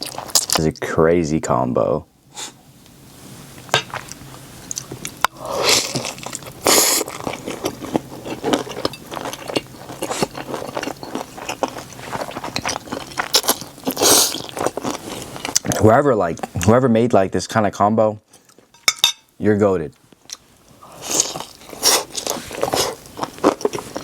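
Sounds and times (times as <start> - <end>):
biting and chewing food: 3.9 - 15.8, 20.2 - 24.0.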